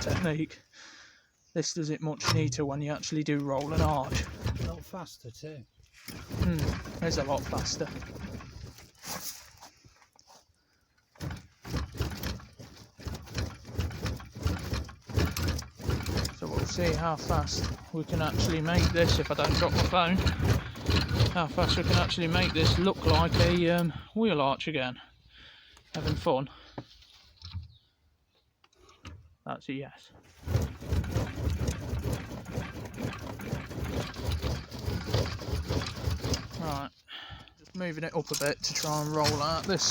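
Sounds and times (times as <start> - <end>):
roller knocking on metal: 0.0 - 0.4, 2.2 - 5.0, 6.1 - 8.8, 11.2 - 24.0, 26.0 - 26.3, 30.3 - 36.8, 38.8 - 39.9
scraping creaks: 0.0 - 0.5, 2.2 - 5.2, 5.8 - 24.1, 25.9 - 27.7, 30.2 - 37.0, 37.6 - 39.9.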